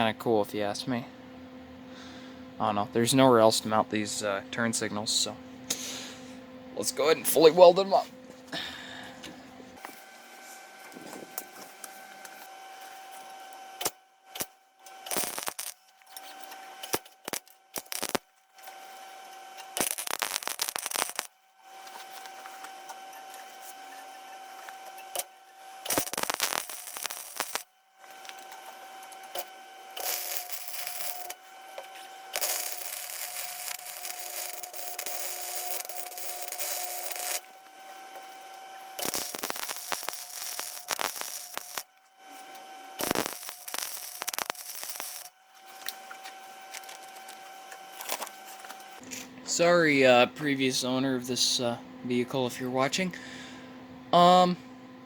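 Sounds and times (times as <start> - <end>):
steady whine: 0.0 - 54.8
welder crackling sizzle: 9.8 - 49.0.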